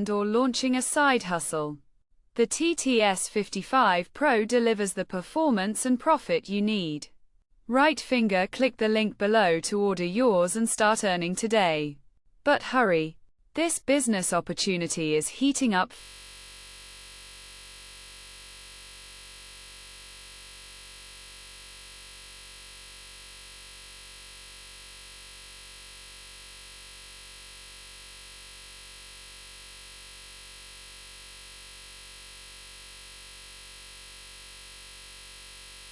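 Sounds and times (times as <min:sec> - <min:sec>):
faint electronic drone with hiss: 0:16.0 - 0:35.9.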